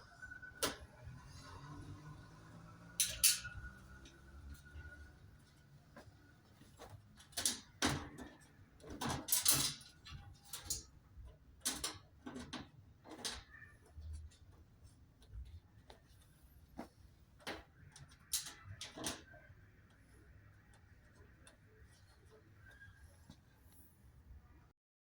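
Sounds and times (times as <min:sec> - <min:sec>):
tools and parts knocking and rattling: 0:03.0 - 0:16.2, 0:17.3 - 0:19.5.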